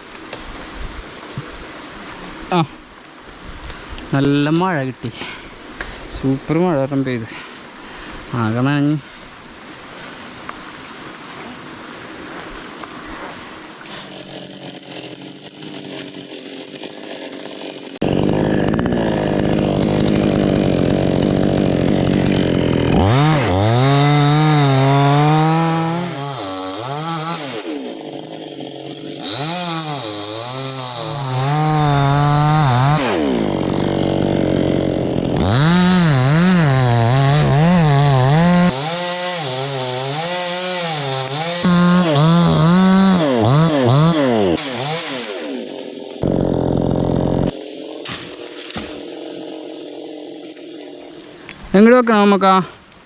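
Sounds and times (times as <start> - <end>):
chainsaw cutting wood: 13.8 - 51.6.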